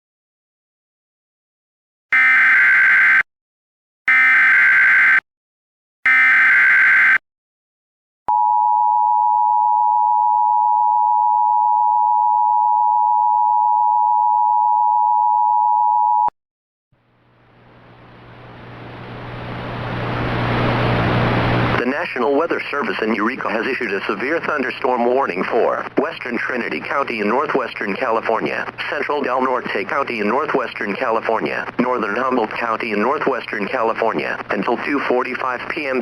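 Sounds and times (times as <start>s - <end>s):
hiss with low hum: 17.0s - 21.8s.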